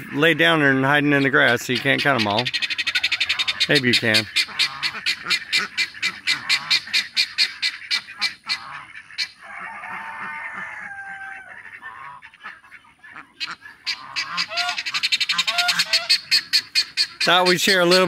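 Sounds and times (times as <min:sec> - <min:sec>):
geese honking: 0:00.0 - 0:18.0
rooster crowing: 0:09.4 - 0:11.6.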